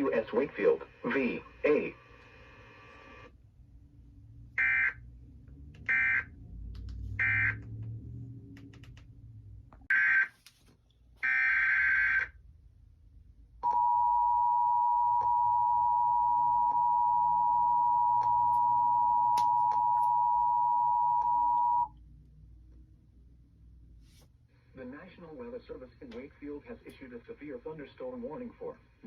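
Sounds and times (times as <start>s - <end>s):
two-tone attention signal: 13.6s - 21.9s.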